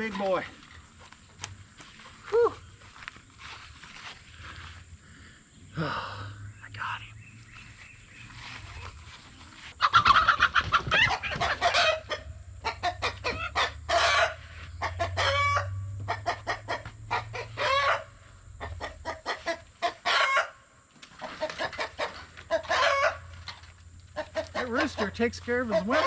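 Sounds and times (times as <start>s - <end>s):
chickens squawking and clucking: 8.6s - 26.0s.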